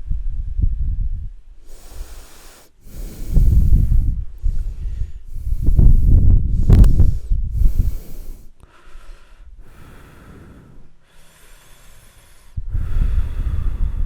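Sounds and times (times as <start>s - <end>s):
wind gust buffeting microphone: 0.0s - 2.2s, 2.8s - 8.5s, 12.6s - 14.0s
slow breaths close up: 1.6s - 14.0s.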